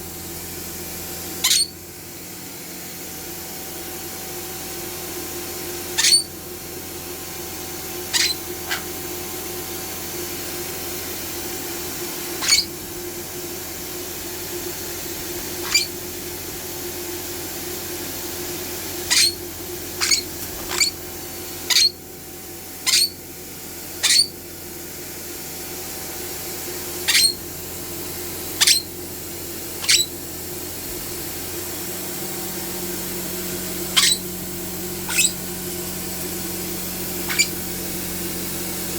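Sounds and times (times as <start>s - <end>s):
vacuum cleaner humming: 0.0s - 38.9s
pet squeaking: 1.4s - 1.8s, 6.0s - 6.4s, 8.1s - 9.0s, 12.4s - 12.8s, 15.6s - 16.0s, 19.0s - 21.0s, 21.6s - 22.0s, 22.8s - 23.2s, 24.0s - 24.4s, 27.1s - 27.5s, 28.6s - 28.9s, 29.8s - 30.2s, 34.0s - 34.4s, 35.0s - 35.5s, 37.2s - 37.6s.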